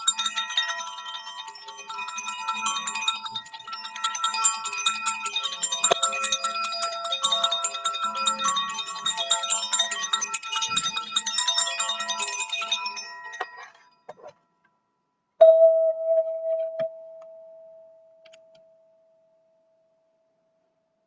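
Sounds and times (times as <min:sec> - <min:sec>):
ringing chime-like tones: 0:00.0 - 0:19.8
single struck ringing tone: 0:15.4 - 0:18.9.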